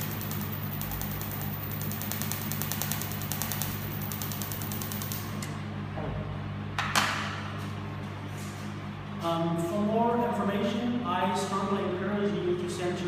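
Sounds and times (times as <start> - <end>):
laser welder ticking: 0.0 - 5.5
machine hum: 0.0 - 13.0.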